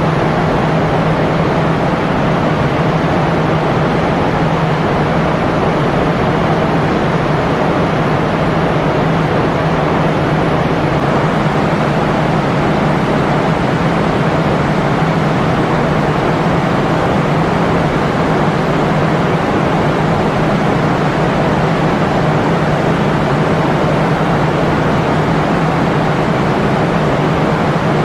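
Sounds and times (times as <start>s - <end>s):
loud mechanical roar: 0.0s - 28.0s.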